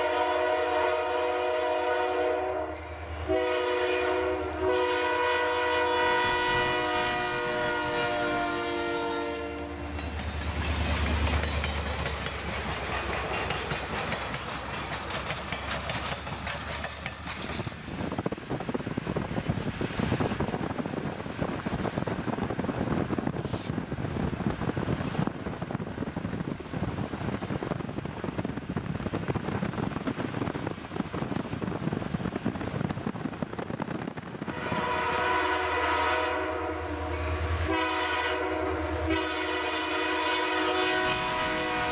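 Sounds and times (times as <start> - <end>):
locomotive horn: 0.0 - 10.0, 34.4 - 41.9
locomotives rumbling past: 2.8 - 41.9
train wheels clattering over rails: 9.7 - 34.6.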